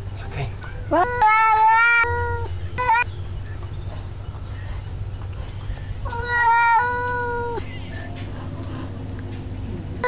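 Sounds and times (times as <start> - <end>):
cat yowling: 0.9 - 3.1, 6.0 - 7.6.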